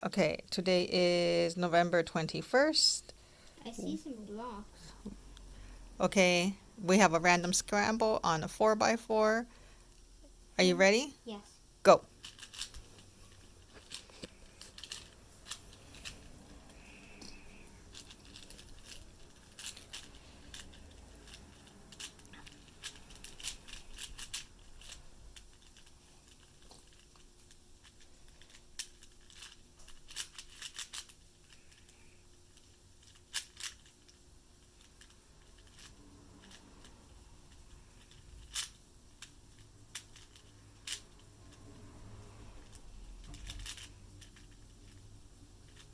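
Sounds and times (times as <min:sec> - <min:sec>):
puzzle cube layers clicking: 0:28.4 - 0:31.1.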